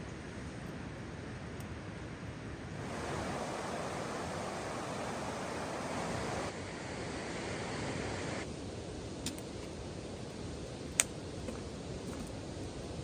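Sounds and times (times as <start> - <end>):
campfire pops: 9.2 - 9.5, 10.9 - 12.3.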